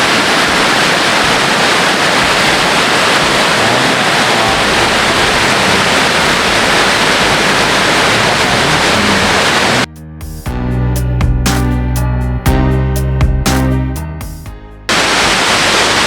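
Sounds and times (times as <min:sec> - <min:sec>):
waterfall roaring: 0:00.0 - 0:09.9, 0:14.9 - 0:16.0.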